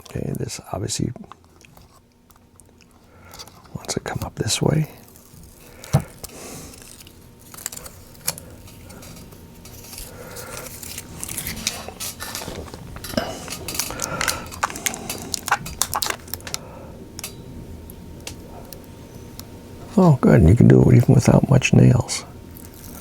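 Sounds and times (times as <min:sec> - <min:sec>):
plastic film being peeled: 0:05.0 - 0:16.6, 0:22.5 - 0:23.0.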